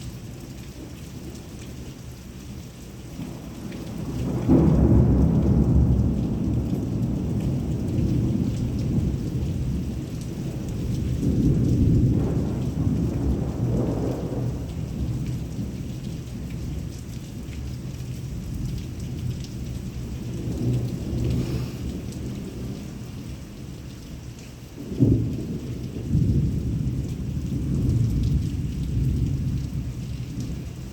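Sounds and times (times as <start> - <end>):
heavy rain: 0.0 - 30.9
thunder rumbling: 3.3 - 16.9, 18.3 - 23.1, 24.8 - 30.9.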